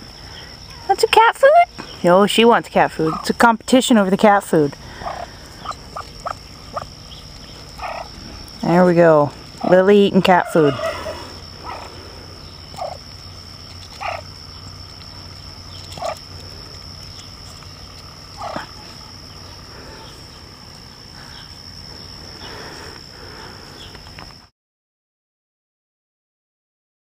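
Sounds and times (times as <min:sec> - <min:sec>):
duck eating from a hand: 0:15.0 - 0:19.1.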